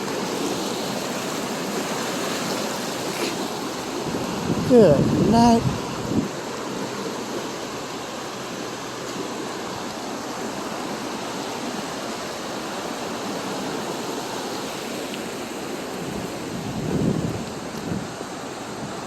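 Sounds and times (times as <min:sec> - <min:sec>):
flooded creek rushing: 0:00.0 - 0:19.0.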